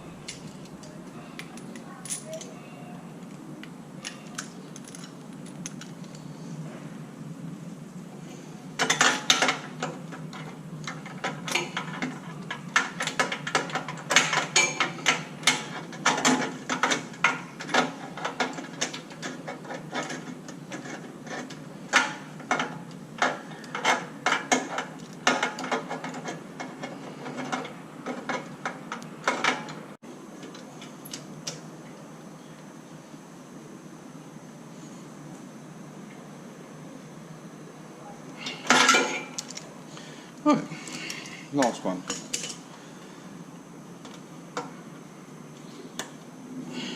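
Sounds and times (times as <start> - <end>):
low steady background hum: 0.0 - 46.9.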